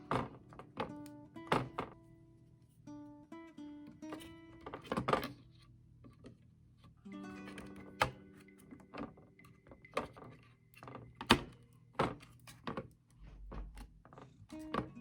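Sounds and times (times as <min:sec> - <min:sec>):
computer parts knocking: 0:00.0 - 0:02.0, 0:11.0 - 0:15.0
acoustic guitar music: 0:00.0 - 0:05.6, 0:07.0 - 0:11.2, 0:14.5 - 0:15.0.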